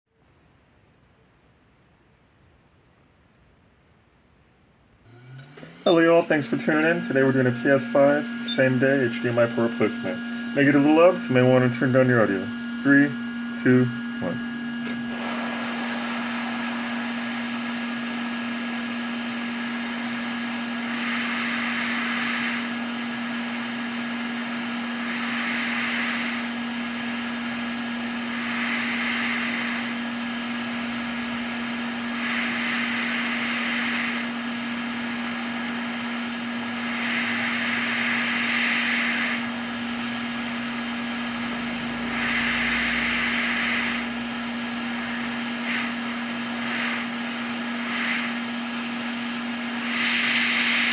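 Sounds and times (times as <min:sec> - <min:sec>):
electrical hum: 0:05.0 - 0:50.9
air tool hissing: 0:14.9 - 0:50.9.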